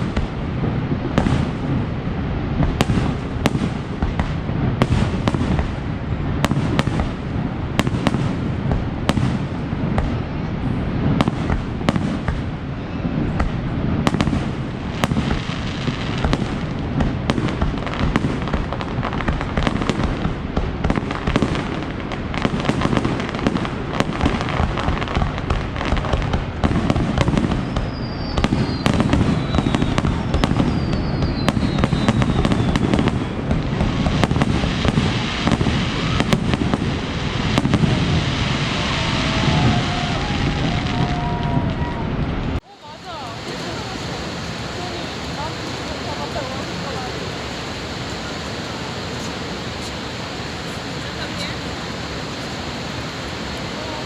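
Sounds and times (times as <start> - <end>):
fireworks bangs: 0.0 - 54.0
falling firework whistles: 26.0 - 42.1.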